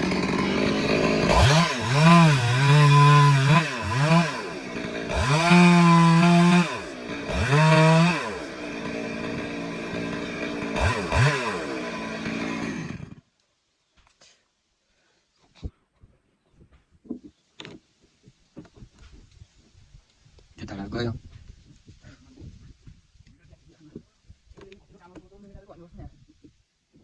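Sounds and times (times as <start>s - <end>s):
chainsaw revving: 0.0s - 13.2s.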